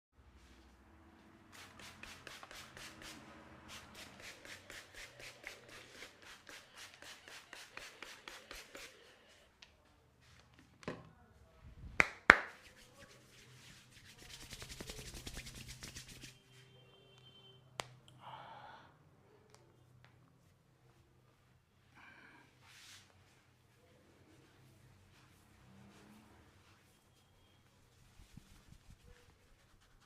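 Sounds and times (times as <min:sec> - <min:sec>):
hands tapping on a head: 0:12.0 - 0:12.6.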